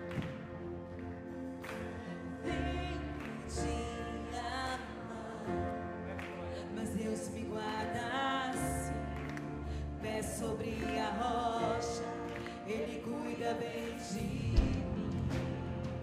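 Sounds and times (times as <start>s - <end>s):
gospel band sustained chords: 0.0s - 16.0s
steady bass: 14.1s - 16.0s.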